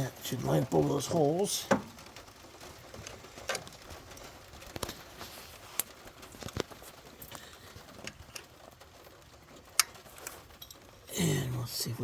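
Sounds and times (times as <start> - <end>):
tools and metal parts clicking: 10.2 - 10.8.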